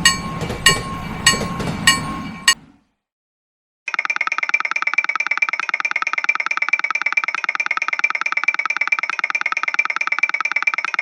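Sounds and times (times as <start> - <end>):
railroad crossing bell ringing: 0.0 - 2.8.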